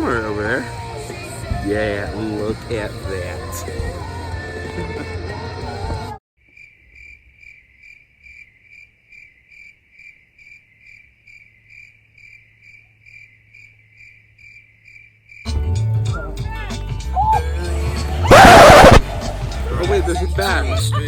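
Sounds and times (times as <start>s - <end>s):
music: 0.0s - 6.2s, 15.5s - 21.0s
cricket chirping: 6.4s - 15.6s
voices: 16.2s - 21.0s.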